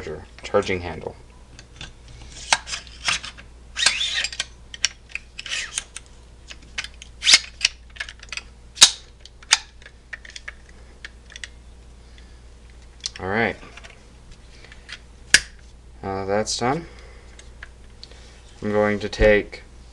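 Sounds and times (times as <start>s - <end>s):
metal clicks and sliding scrapes: 1.7s - 6.1s.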